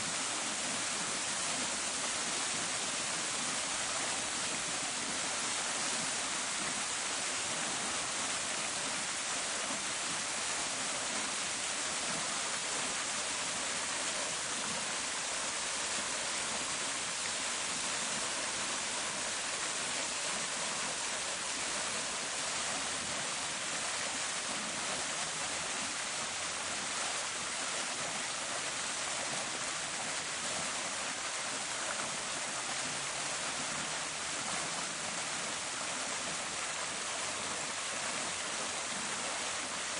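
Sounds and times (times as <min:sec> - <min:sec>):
fountain water splashing: 0:00.0 - 0:39.9.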